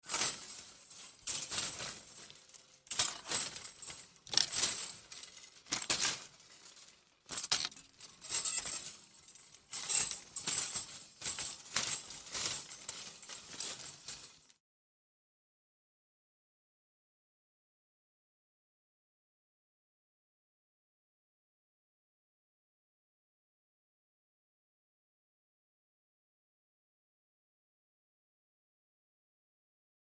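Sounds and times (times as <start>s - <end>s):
wire hangers clinking: 0.0s - 14.6s.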